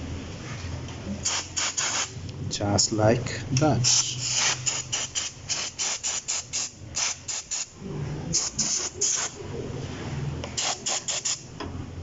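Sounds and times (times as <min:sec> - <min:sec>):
cleaning spray hissing: 0:03.8 - 0:07.7.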